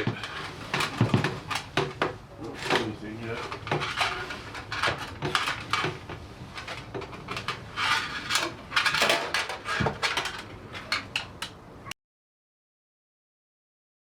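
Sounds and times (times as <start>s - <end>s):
fish tape clattering in metal body: 0.0s - 11.6s.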